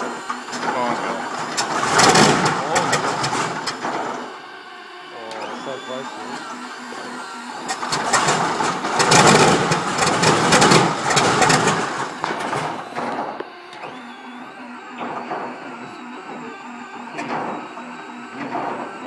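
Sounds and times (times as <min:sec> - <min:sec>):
aircraft engine coughing and popping: 0:00.0 - 0:04.2, 0:07.7 - 0:13.5.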